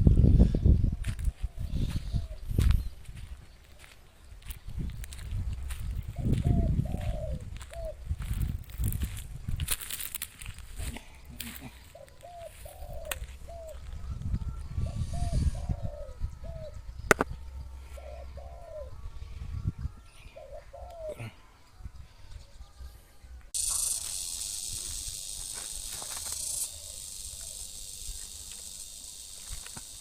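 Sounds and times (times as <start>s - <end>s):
dove cooing: 1.4s - 2.9s, 5.6s - 8.5s, 10.8s - 17.2s, 17.8s - 19.1s, 20.2s - 21.5s, 25.8s - 30.0s
sharp click: 17.1s - 17.3s
steady high hiss: 23.6s - 30.0s.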